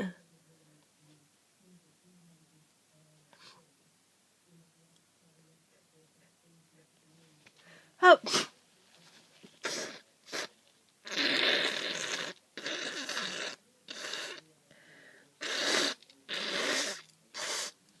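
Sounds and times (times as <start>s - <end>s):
person blowing nose: 8.2s - 8.5s, 9.6s - 10.5s, 11.1s - 14.4s, 15.4s - 17.8s.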